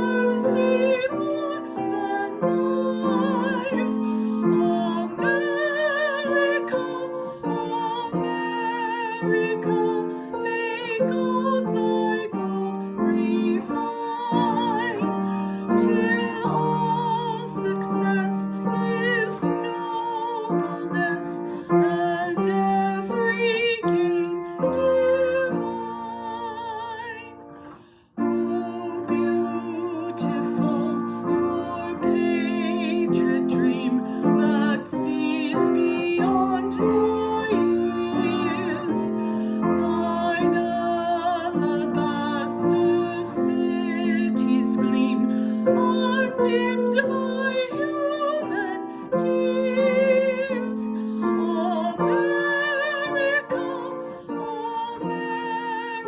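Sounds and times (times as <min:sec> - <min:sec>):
person singing with vibrato: 0:00.0 - 0:56.0
piano accompaniment: 0:00.0 - 0:56.0.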